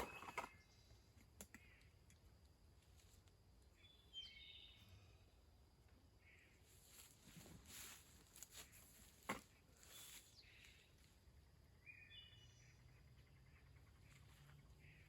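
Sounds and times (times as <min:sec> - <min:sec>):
bird chirp: 0:00.0 - 0:02.0, 0:03.6 - 0:05.5, 0:08.5 - 0:15.0
soft rustles: 0:06.8 - 0:10.4.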